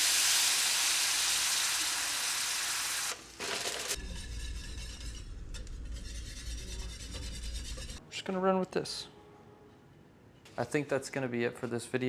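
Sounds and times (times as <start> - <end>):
food sizzling in a pan: 0.0 - 4.0.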